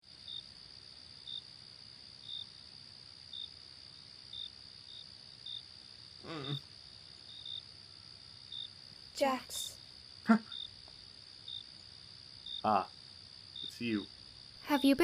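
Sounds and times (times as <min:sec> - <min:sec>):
crickets chirping: 0:00.0 - 0:15.0
low voice murmur: 0:06.2 - 0:06.6.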